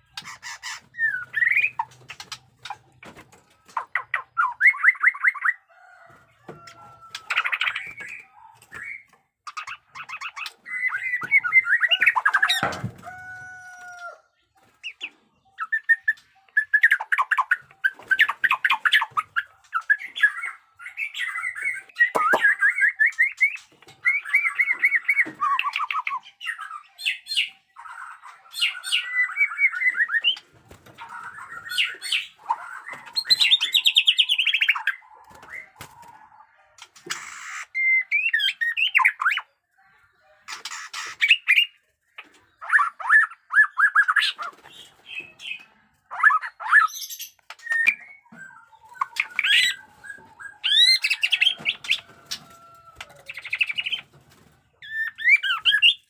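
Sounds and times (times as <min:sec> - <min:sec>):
bird singing trills: 0:06.6 - 0:13.9, 0:40.5 - 0:54.1, 0:54.8 - 0:56.0.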